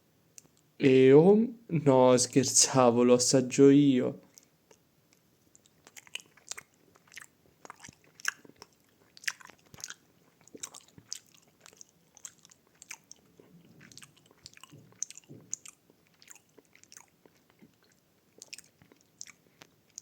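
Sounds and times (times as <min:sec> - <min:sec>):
mouth clicks and smacks: 0:04.2 - 0:20.0
person chewing gummy candy: 0:04.2 - 0:20.0.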